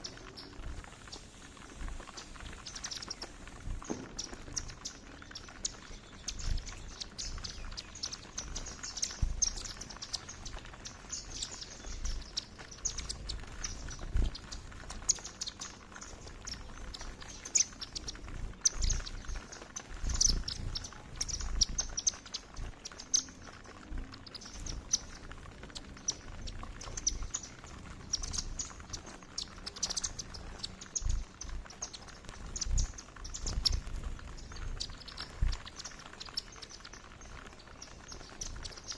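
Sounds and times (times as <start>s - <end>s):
birds chirping: 0.0s - 38.9s.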